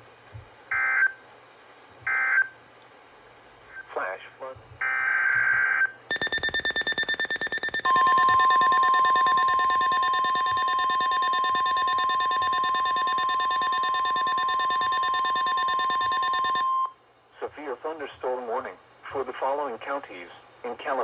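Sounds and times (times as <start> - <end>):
rapidly pulsing buzzy alarm tone: 6.1 - 16.7
steady pure tone: 6.1 - 16.8.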